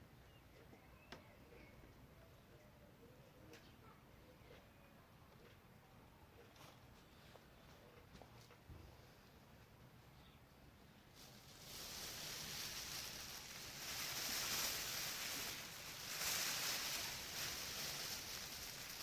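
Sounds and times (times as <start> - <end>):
foil sheeting crinkling: 11.2 - 19.0.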